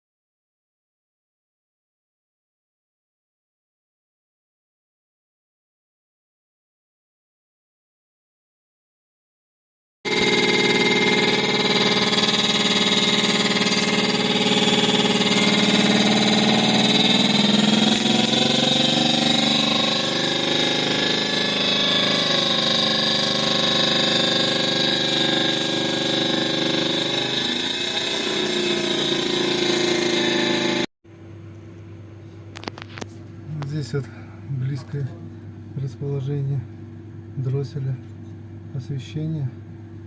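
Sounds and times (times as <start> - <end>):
refrigerator buzzing and rattling: 10.1 - 31.4, 32.0 - 40.0.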